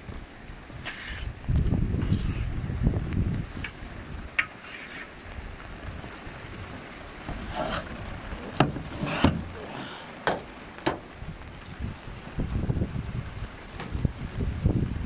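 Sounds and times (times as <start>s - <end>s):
wind rumble on microphone: 0.0s - 9.7s, 10.8s - 15.0s
swishing scraping strokes: 0.8s - 1.3s, 1.9s - 2.6s, 4.6s - 5.2s, 7.3s - 8.0s.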